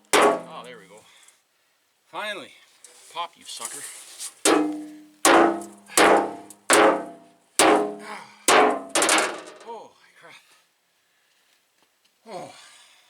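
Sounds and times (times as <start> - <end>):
sledgehammer clanging on steel: 0.0 - 0.8, 4.5 - 9.7.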